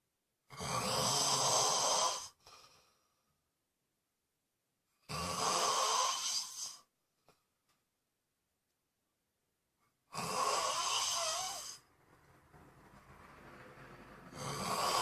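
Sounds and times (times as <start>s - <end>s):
person snoring: 0.5s - 2.6s, 5.1s - 6.9s, 10.1s - 11.9s, 14.3s - 15.0s.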